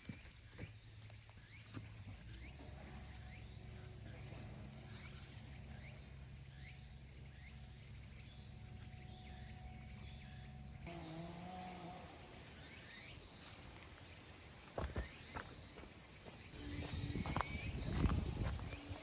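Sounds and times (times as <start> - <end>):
steady low hum: 0.6 - 19.0.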